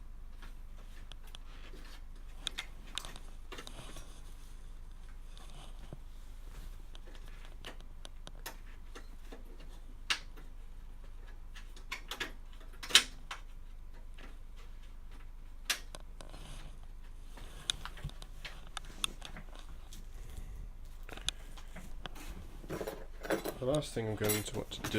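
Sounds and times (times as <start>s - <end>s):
plastic parts clicking and tapping: 6.9s - 20.0s.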